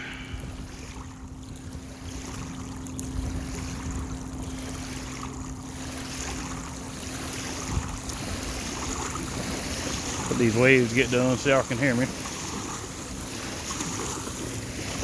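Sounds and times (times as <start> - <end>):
small waves lapping against bank: 0.0 - 15.0
steady low hum: 0.0 - 15.0.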